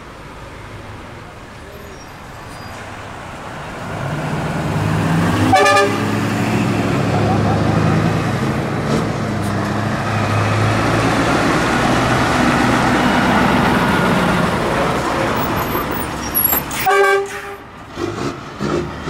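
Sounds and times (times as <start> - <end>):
truck engine passing: 0.0 - 19.0
truck horn blast: 5.3 - 7.2, 16.3 - 17.7.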